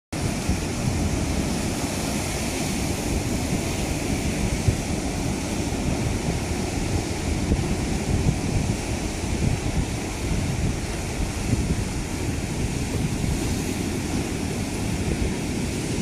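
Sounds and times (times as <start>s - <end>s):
sea surf rushing: 0.2s - 16.0s
wind buffeting microphone: 0.2s - 16.0s.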